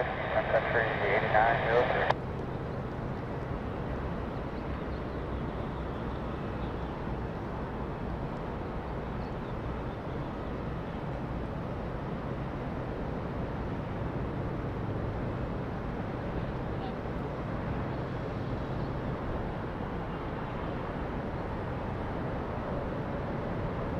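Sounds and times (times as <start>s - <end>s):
distant jet engines rumbling: 0.0s - 4.6s.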